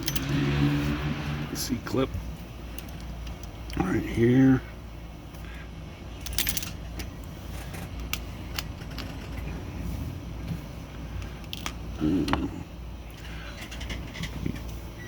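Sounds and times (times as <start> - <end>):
handling sound: 0.0 - 1.0
low steady hum: 0.0 - 15.0.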